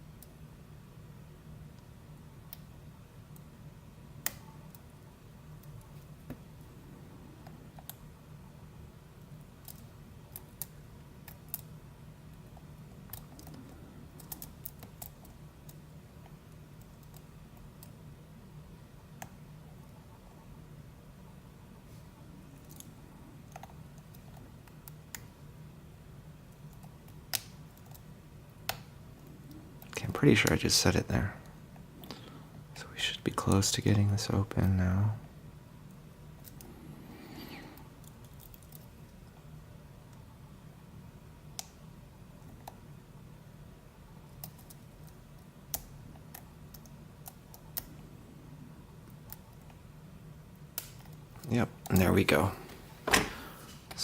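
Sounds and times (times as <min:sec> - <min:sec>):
faint low hum: 0:00.0 - 0:54.0.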